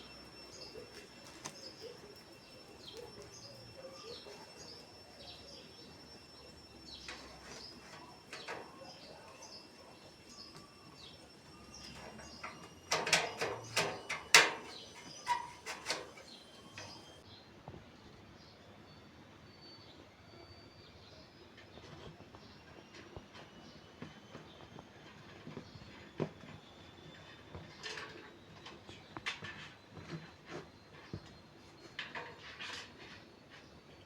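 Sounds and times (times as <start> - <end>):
small birds chirping: 0.0 - 17.5
sharp clicks and knocks: 11.9 - 17.1.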